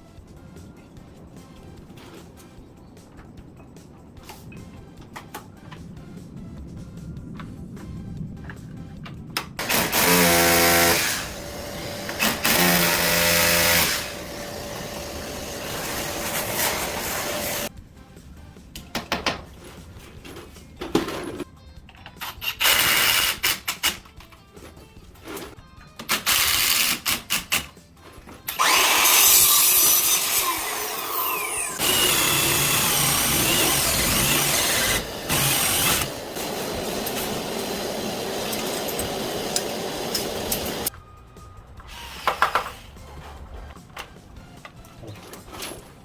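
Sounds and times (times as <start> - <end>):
background music: 0.0 - 46.0
power drill whining: 9.6 - 17.7, 28.4 - 40.9, 41.9 - 42.8.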